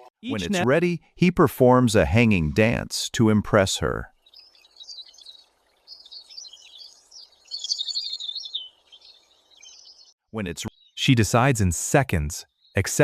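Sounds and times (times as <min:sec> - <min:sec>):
small birds chirping: 0:04.0 - 0:11.5, 0:12.4 - 0:13.0.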